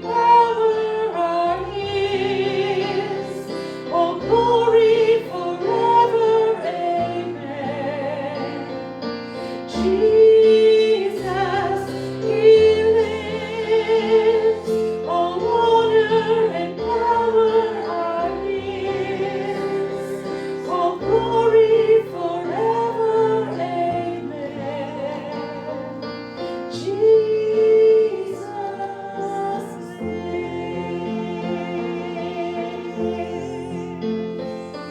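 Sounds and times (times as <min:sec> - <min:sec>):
instrumental accompaniment: 0:00.0 - 0:34.9.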